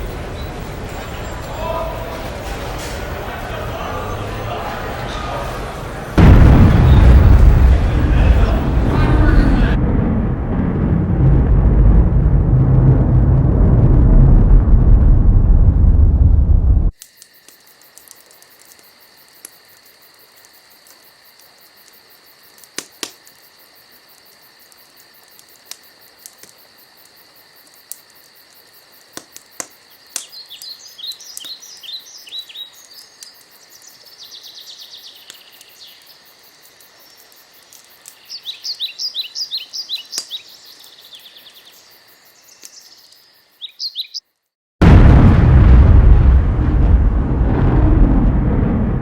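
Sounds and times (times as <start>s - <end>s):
birds chirping: 3.1s - 9.8s, 30.2s - 36.2s, 38.1s - 44.3s
buzzy bird trill: 38.2s - 44.3s.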